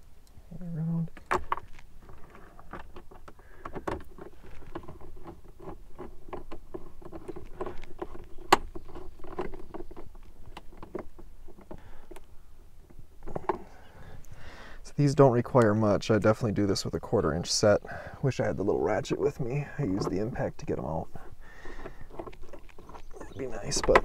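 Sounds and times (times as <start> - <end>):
clicks and knocks of plastic trim: 1.2 - 12.3, 21.5 - 24.0.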